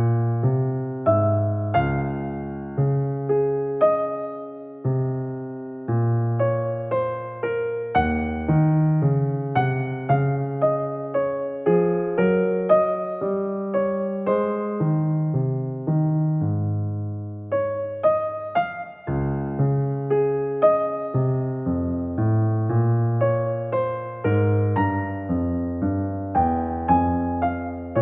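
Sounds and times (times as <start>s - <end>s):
gentle piano music: 0.0s - 28.0s.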